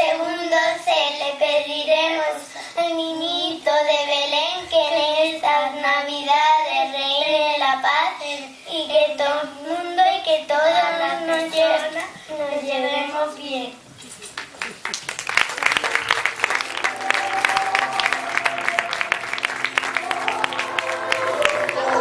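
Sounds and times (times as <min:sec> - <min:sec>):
children singing a carol: 0:00.0 - 0:08.4, 0:19.9 - 0:22.0.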